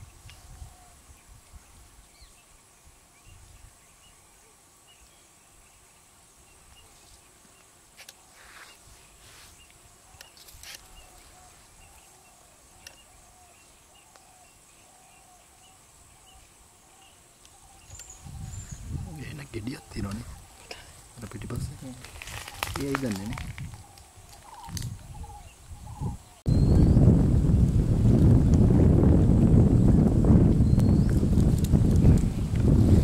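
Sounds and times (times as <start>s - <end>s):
outdoor natural ambience: 0.0s - 33.0s
small animal calls: 21.9s - 26.4s.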